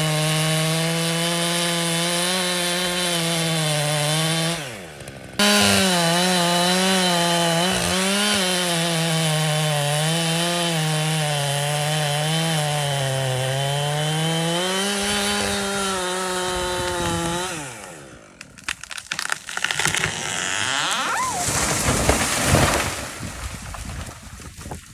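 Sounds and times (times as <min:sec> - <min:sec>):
chainsaw cutting wood: 0:00.0 - 0:24.8
tree cracking and crashing: 0:14.4 - 0:24.9.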